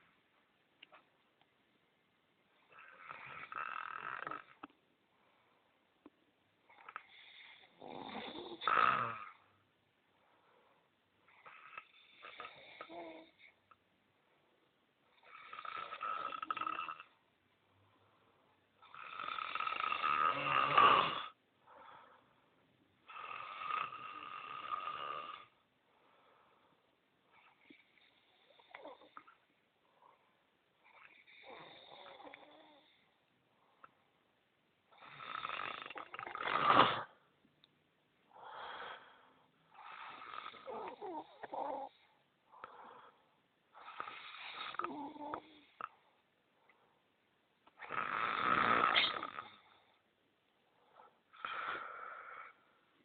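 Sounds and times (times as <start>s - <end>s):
soft breath: 5.0s - 6.1s, 9.4s - 11.1s, 21.6s - 22.6s, 25.8s - 31.6s, 38.3s - 47.2s, 48.9s - 53.0s
person snoring: 6.8s - 9.4s, 15.2s - 17.1s, 18.8s - 21.4s, 35.0s - 37.1s, 43.8s - 45.9s, 47.8s - 49.6s.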